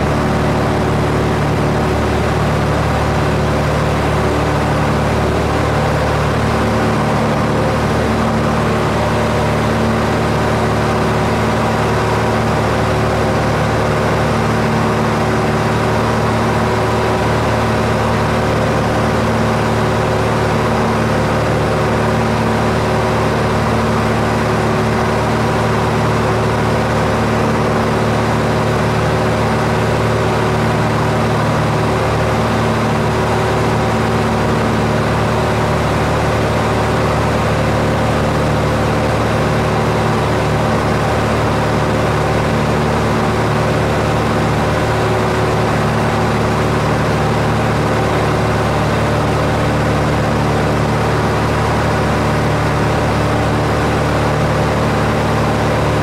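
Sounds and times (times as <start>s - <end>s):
aircraft engine drone: 0.0s - 56.0s.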